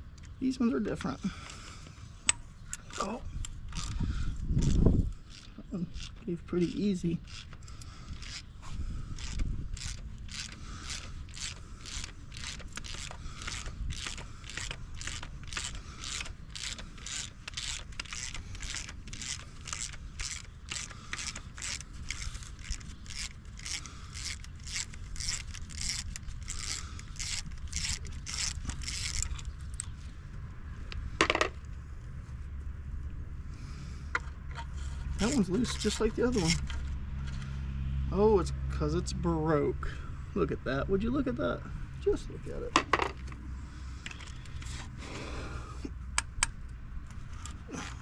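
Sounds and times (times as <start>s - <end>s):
ratchet pawl clicking: 2.2s - 30.0s, 35.1s - 37.4s.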